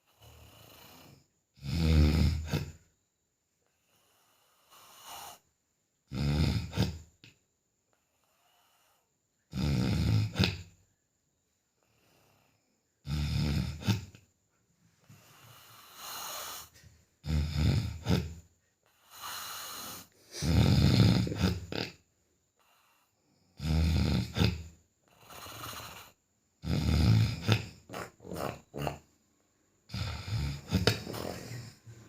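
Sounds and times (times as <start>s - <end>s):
heavy snoring: 0.0s - 2.9s, 3.8s - 5.4s, 6.1s - 7.3s, 8.0s - 10.8s, 11.8s - 14.3s, 15.0s - 29.1s, 29.9s - 32.0s
soft airy breath: 14.8s - 17.1s, 18.6s - 20.6s, 30.7s - 32.0s.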